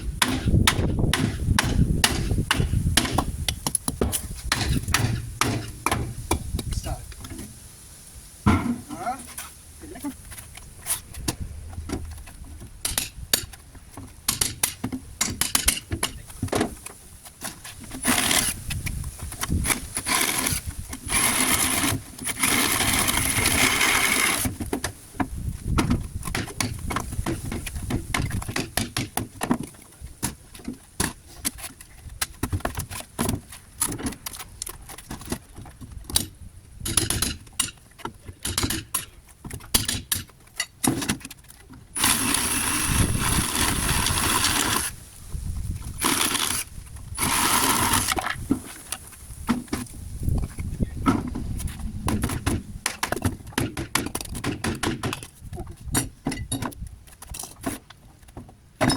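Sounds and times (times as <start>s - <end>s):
hammer knocking on boards: 3.9s - 6.4s, 8.5s - 8.9s
reciprocating saw cutting nails: 18.0s - 18.6s, 42.0s - 45.0s, 46.0s - 48.2s.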